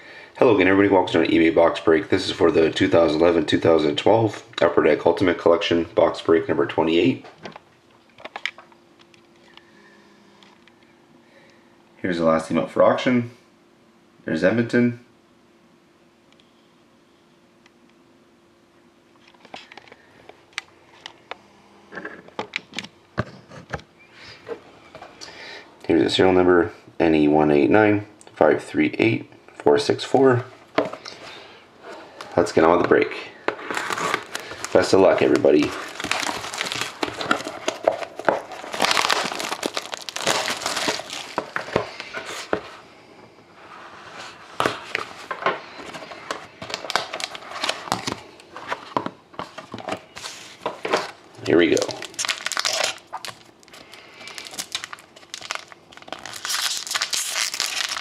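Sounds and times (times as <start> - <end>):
packaging crinkling and clicking: 33.6 - 42.6, 44.7 - 50.0, 50.7 - 58.0.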